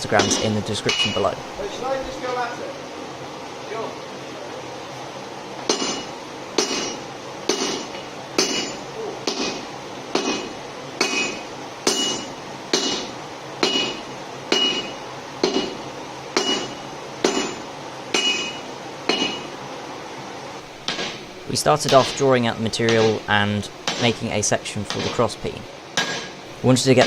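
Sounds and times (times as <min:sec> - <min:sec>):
hammer striking steel on anvil: 0:00.0 - 0:01.3, 0:05.6 - 0:15.8, 0:16.4 - 0:19.5, 0:20.9 - 0:21.2, 0:21.8 - 0:23.2, 0:23.8 - 0:24.2, 0:24.9 - 0:25.2, 0:26.0 - 0:26.4.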